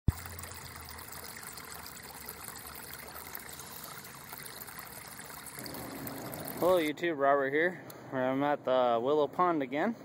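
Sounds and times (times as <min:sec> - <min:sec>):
running trickling water: 0:00.0 - 0:07.0.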